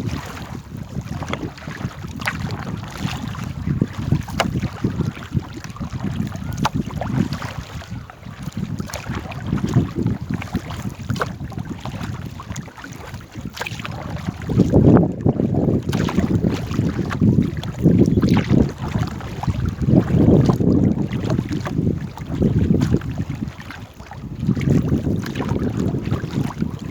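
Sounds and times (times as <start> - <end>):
paddle splashes: 0.0 - 26.9
wind buffeting microphone: 0.0 - 26.9
boat knocks: 4.0 - 7.4.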